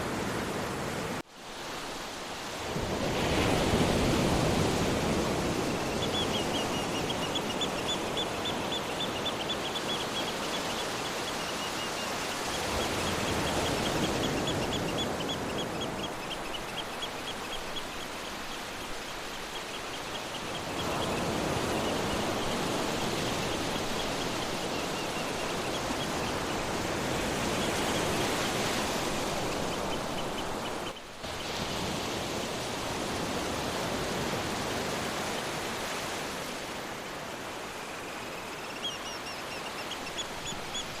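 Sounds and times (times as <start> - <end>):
sea surf washing: 0.0 - 41.0.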